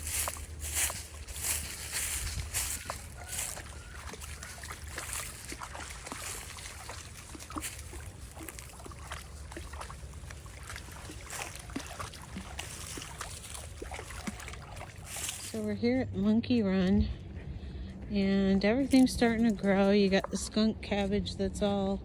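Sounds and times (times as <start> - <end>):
creek trickling and babbling: 0.0 - 16.3
low rumble: 0.0 - 22.0.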